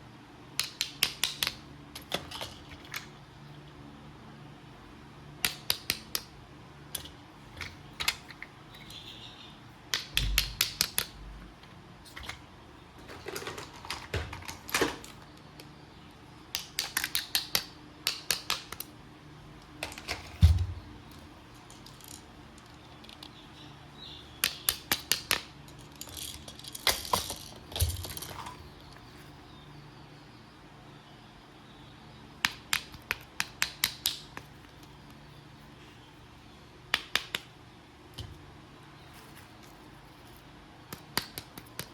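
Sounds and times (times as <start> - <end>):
small hard objects clicking: 0.6 - 3.1, 5.4 - 6.3, 9.9 - 11.2, 13.0 - 15.7, 16.5 - 18.9, 19.7 - 23.4, 24.4 - 29.2, 32.4 - 35.2, 36.9 - 37.5, 40.9 - 41.9
dull thumps: 20.2 - 21.2.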